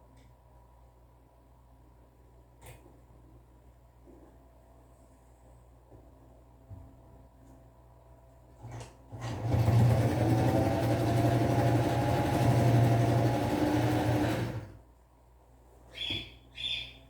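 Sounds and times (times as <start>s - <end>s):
sewing machine stitching: 8.6s - 14.8s.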